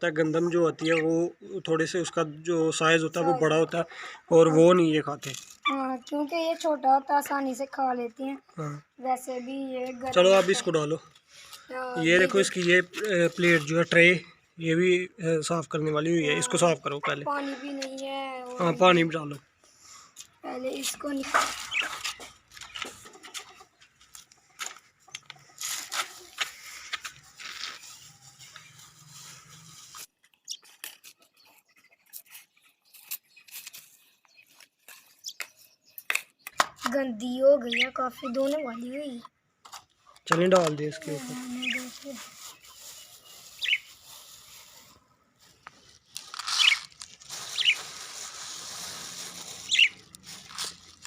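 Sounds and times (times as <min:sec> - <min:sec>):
budgerigars chirping: 0:42.9 - 0:43.9, 0:47.5 - 0:47.8, 0:49.7 - 0:50.0.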